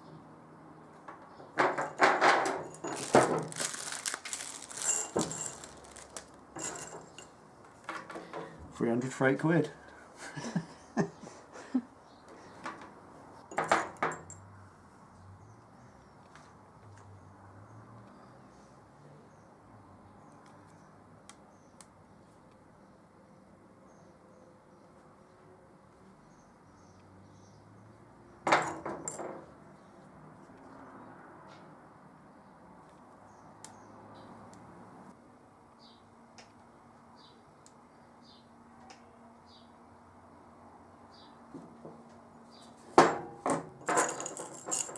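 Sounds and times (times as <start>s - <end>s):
small hard objects clattering: 1.5s - 8.2s, 43.5s - 44.9s.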